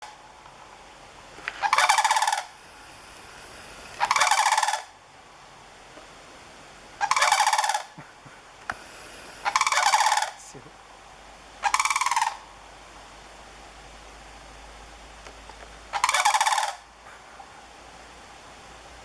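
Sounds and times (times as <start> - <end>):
cranes bugling: 1.4 - 12.4.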